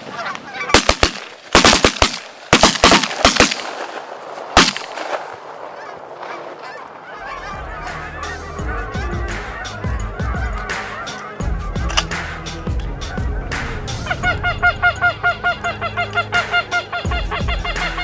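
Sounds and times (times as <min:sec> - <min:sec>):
geese honking: 0:00.0 - 0:03.9, 0:05.6 - 0:18.0
shotgun blasts: 0:00.8 - 0:05.2.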